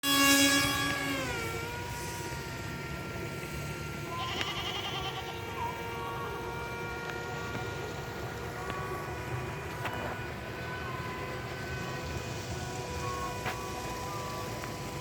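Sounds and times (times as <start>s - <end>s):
model jet motor whining: 0.0s - 15.0s.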